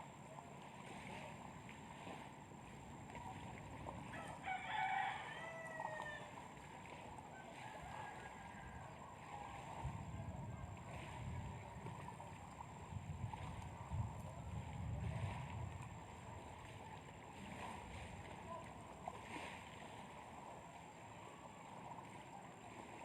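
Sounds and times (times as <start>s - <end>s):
rooster crowing: 4.1s - 6.4s, 7.3s - 10.7s.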